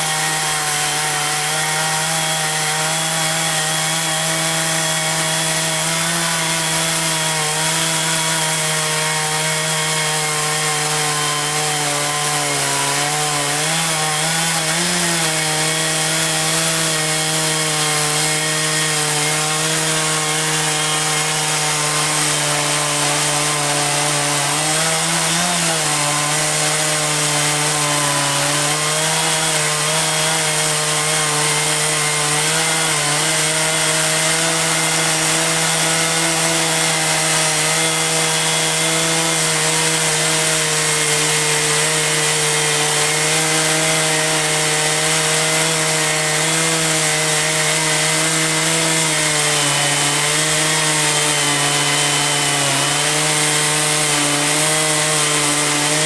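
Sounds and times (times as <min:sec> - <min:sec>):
saw cutting through log: 0:00.0 - 0:56.0.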